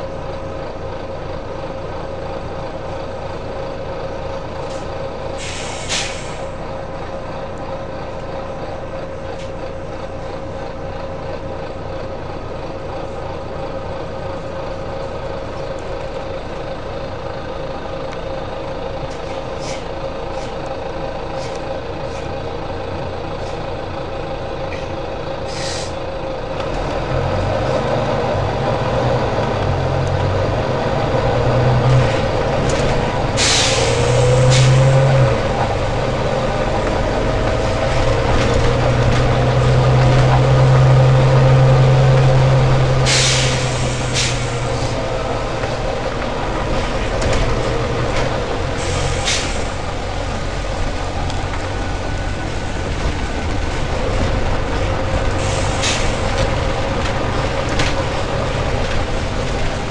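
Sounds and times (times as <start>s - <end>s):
bus diesel engine whining: 0.0s - 59.9s
air brake hisses: 4.7s - 6.6s, 19.6s - 20.6s, 25.5s - 26.0s, 33.4s - 34.9s, 43.0s - 45.0s, 48.8s - 49.8s, 55.4s - 56.4s.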